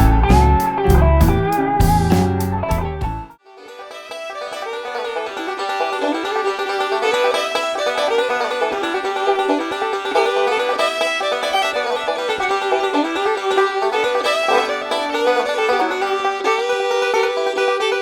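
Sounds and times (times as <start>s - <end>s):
plucked string tune: 0.0s - 18.0s.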